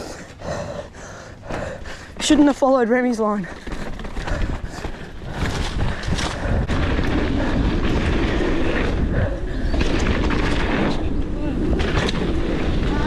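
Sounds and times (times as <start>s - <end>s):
bike rattles and clicks: 1.0s - 13.0s
bike tyres rumbling on dirt: 1.4s - 13.0s
wind on microphone: 3.3s - 13.0s.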